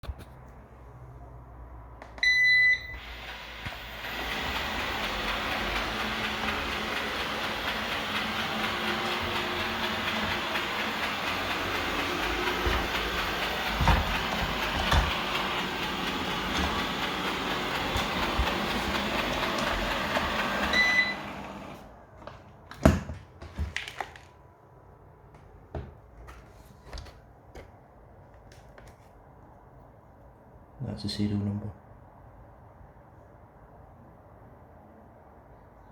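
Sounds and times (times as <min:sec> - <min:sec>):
robot vacuum beeping: 0:02.2 - 0:21.8
robot vacuum running: 0:02.9 - 0:21.9
sharp clicks in vacuum noise: 0:03.0 - 0:04.2.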